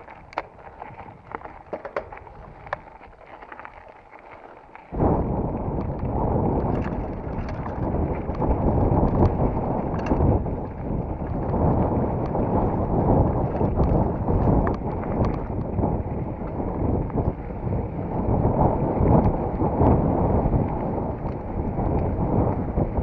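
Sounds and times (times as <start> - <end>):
small clicks and rattles: 0.0 - 5.0, 5.8 - 10.5, 13.4 - 15.7
bike rolling on dirt trail: 0.0 - 23.0
wind buffeting microphone: 0.0 - 23.0.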